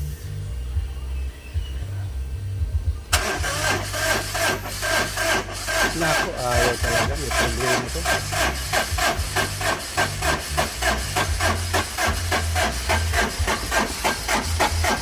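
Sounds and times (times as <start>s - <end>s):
engine cranked by starter: 3.1s - 15.0s.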